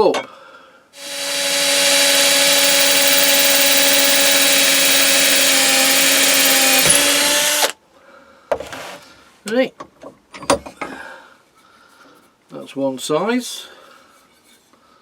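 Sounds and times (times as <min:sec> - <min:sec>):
power drill boring into wood: 0:01.0 - 0:07.8.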